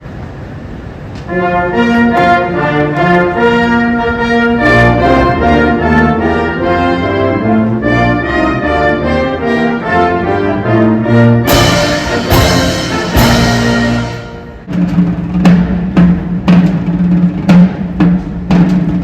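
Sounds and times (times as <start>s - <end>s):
brass band playing slow melody: 1.2s - 14.7s
trombones: 1.2s - 16.2s.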